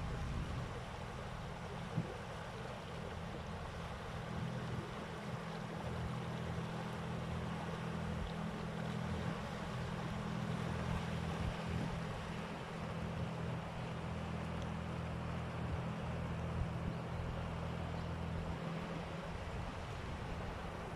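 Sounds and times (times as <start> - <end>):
wind noise: 0.0 - 0.9
low engine hum: 0.0 - 20.9.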